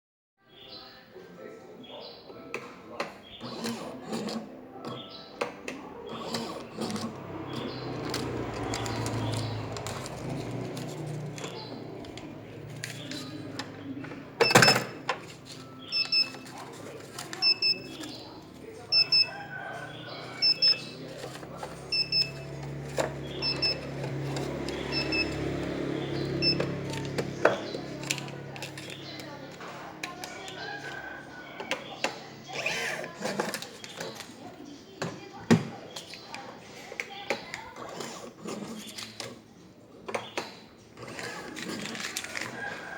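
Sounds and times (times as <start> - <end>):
printer clicks: 2.6 - 19.6
printer paper feed buzzing: 3.0 - 34.4, 40.3 - 42.9.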